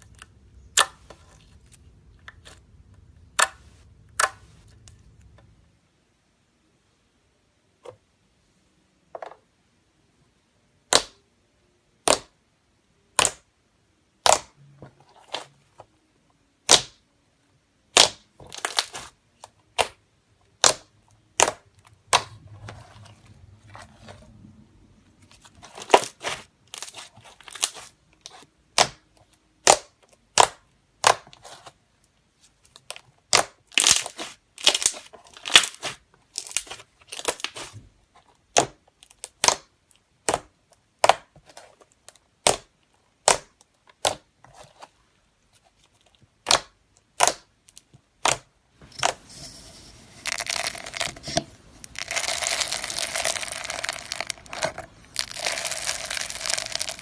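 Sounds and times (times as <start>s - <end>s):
slime popping and crackling: 17.9s - 24.1s, 25.3s - 31.6s, 32.8s - 37.8s, 38.4s - 41.3s, 42.3s - 44.3s, 46.4s - 49.2s, 50.2s - 57.0s.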